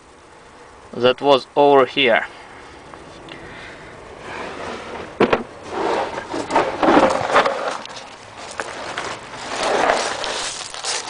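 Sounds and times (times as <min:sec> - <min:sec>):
hard parts scraping and rubbing: 0:04.1 - 0:11.0
sharp knock: 0:05.2 - 0:05.5.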